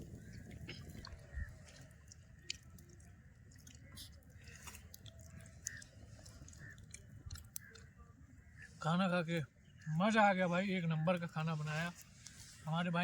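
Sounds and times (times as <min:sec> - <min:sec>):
person chewing food: 0:02.0 - 0:07.8.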